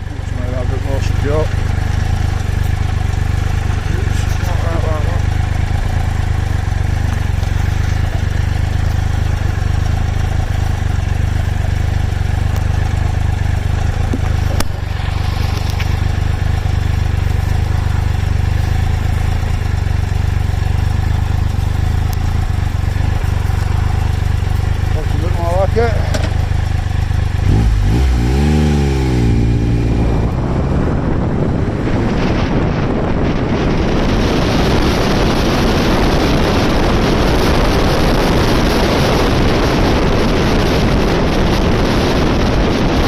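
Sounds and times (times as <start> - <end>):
motorcycle engine running: 0.0 - 43.0
wind buffeting the microphone: 29.2 - 43.0.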